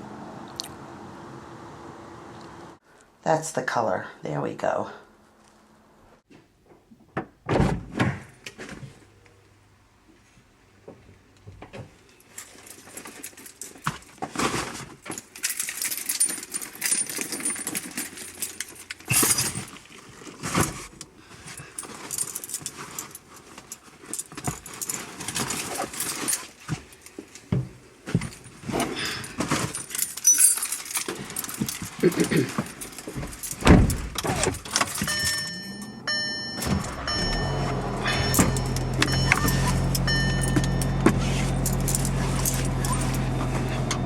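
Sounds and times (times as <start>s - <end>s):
keys jangling: 15.2s - 19.8s, 29.6s - 43.2s
rustling and knocks: 21.8s - 35.5s.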